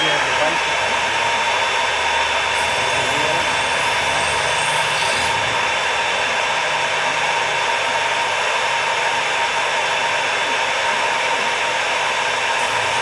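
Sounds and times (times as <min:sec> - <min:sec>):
knife sharpening machine whirring: 0:00.2 - 0:06.9, 0:12.3 - 0:13.0.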